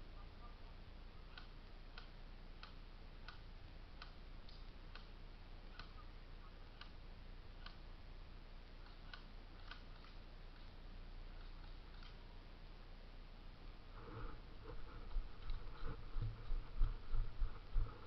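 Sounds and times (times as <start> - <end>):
low steady hum: 0.0 - 18.0
faint sharp ticks: 1.3 - 6.0, 8.6 - 10.8.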